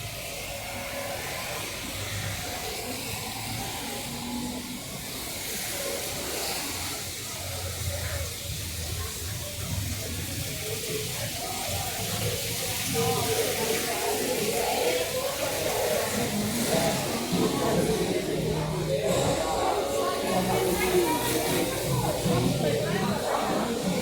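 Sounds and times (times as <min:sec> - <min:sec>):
heavy rain on street: 0:00.0 - 0:24.0
traffic rumble: 0:00.0 - 0:24.0.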